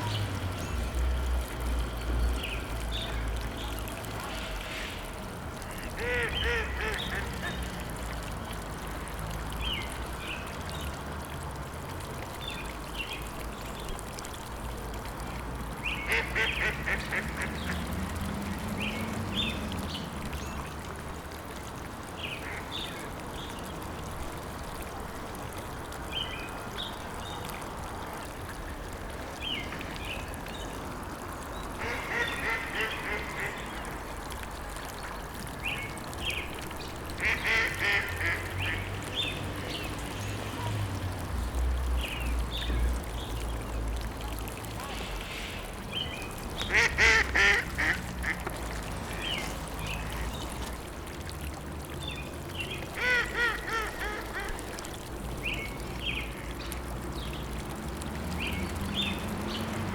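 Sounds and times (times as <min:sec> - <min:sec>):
ducks quacking: 0:05.8 - 0:07.6, 0:16.1 - 0:17.8, 0:37.2 - 0:38.8, 0:46.7 - 0:48.6.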